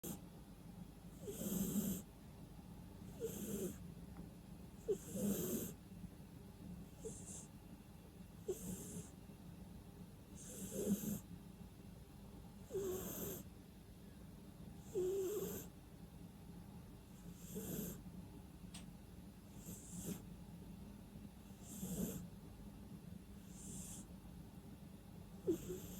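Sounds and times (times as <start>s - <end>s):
cat snoring: 0.0s - 0.2s, 1.1s - 2.1s, 3.0s - 3.8s, 4.8s - 5.8s, 6.9s - 7.5s, 8.4s - 9.2s, 10.4s - 11.3s, 12.6s - 13.5s, 14.8s - 15.7s, 17.2s - 18.0s, 19.5s - 20.2s, 21.5s - 22.3s, 23.4s - 24.1s, 25.4s - 25.9s.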